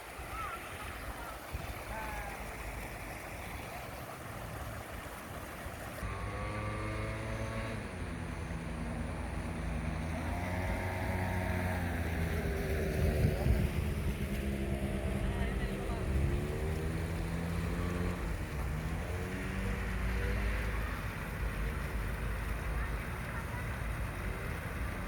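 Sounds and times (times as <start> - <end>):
fountain water rushing: 0.0 - 25.0
low engine drone: 6.0 - 25.0.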